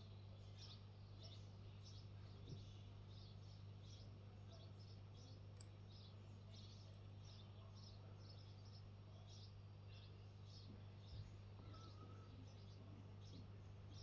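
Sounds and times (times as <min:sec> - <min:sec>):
faint high chirping: 0:00.0 - 0:14.0
steady low hum: 0:00.0 - 0:14.0.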